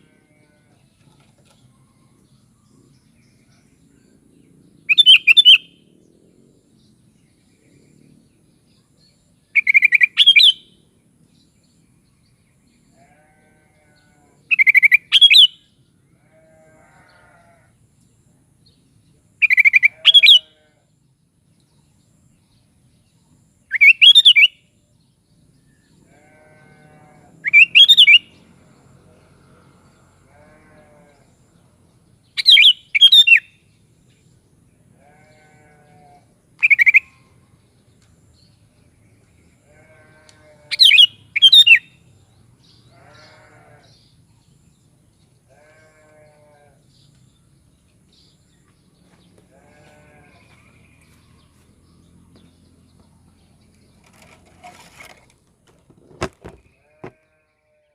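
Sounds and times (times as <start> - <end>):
faint lower bird calls: 12.9 - 15.6, 19.4 - 20.9, 25.8 - 28.4, 30.3 - 31.3, 32.4 - 33.6, 35.0 - 37.5, 39.6 - 42.0, 42.9 - 44.4, 45.5 - 47.2, 49.5 - 51.6.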